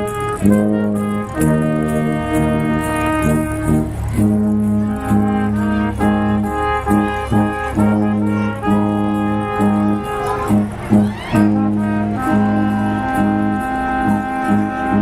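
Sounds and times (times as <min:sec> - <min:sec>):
held instrumental notes: 0:00.0 - 0:15.0
steady low bass line: 0:00.0 - 0:15.0.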